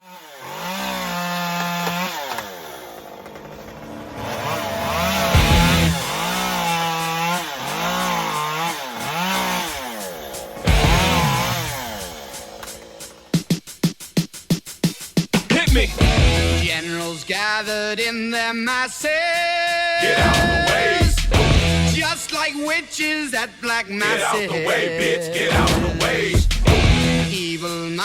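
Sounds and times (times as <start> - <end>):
chainsaw revving: 0.0 - 14.0, 15.6 - 17.5, 20.0 - 22.5, 24.0 - 27.8.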